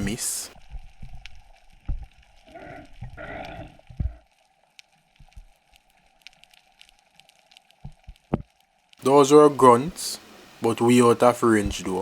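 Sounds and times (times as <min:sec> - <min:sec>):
faint underwater clicks and crackle: 0:00.5 - 0:09.0.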